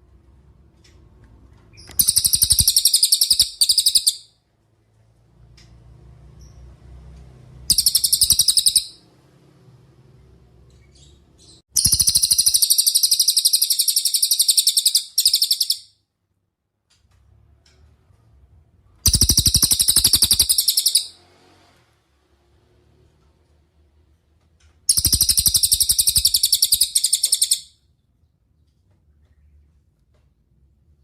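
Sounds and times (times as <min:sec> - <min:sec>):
bird trilling sharp high notes: 0:01.9 - 0:04.3, 0:07.7 - 0:09.0, 0:19.1 - 0:21.2, 0:24.9 - 0:27.7.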